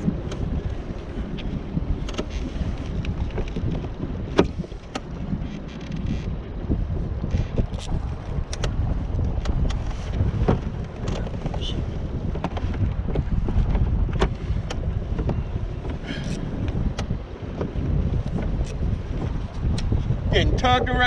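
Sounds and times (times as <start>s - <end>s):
wind buffeting microphone: 0.0s - 21.0s
sharp clicks and knocks: 7.3s - 9.8s.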